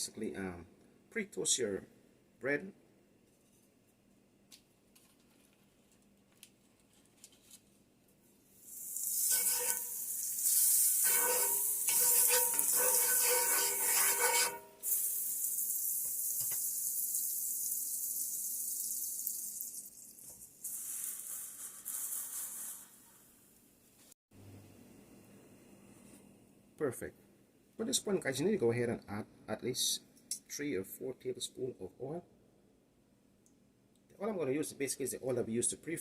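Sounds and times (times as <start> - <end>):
bread sizzling in a hot pan: 8.6 - 23.6.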